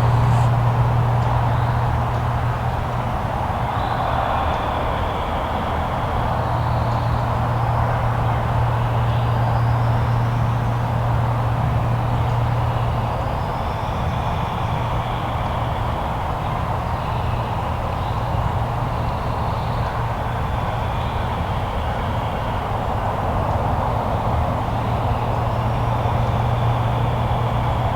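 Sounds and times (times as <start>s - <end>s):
vehicle rumbling: 0.0s - 3.1s.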